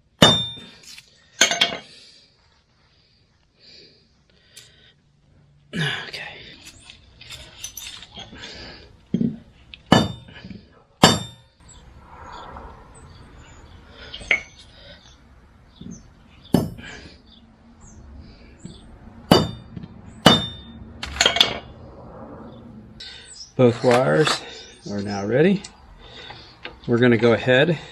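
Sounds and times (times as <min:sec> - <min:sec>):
metal hand tools clinking: 0:00.2 - 0:01.9, 0:06.6 - 0:08.3.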